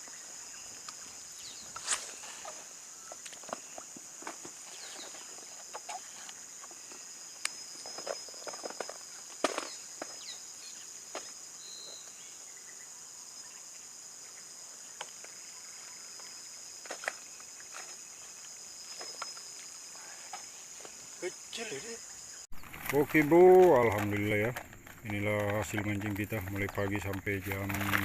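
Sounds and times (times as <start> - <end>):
high-pitched insect drone: 15.5 - 22.5.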